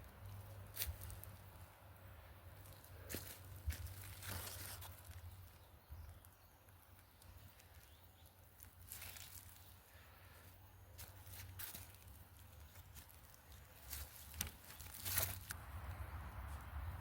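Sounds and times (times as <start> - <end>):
faint rustling and crinkling: 2.5 - 15.6
footsteps: 3.1 - 5.0.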